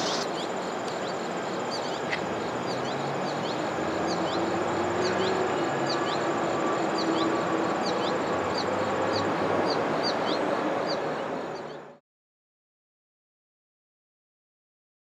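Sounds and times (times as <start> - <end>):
short high insect chirp: 0.0 - 1.2
insects trilling: 0.0 - 11.8.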